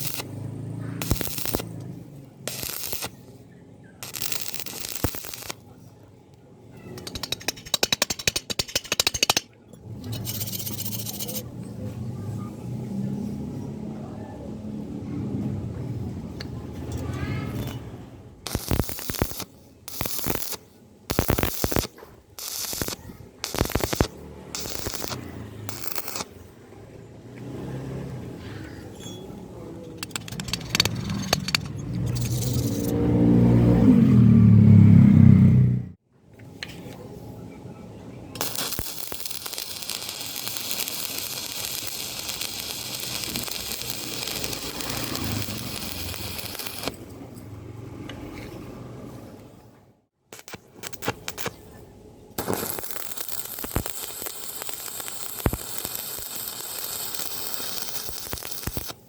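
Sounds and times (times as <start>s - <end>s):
electric arc crackle and hiss: 0.0s - 1.8s, 2.5s - 3.1s, 4.0s - 5.6s, 10.2s - 11.4s, 18.5s - 26.3s, 38.4s - 47.0s, 50.3s - 51.6s, 52.4s - 59.0s
short scraping bursts: 30.0s - 33.0s.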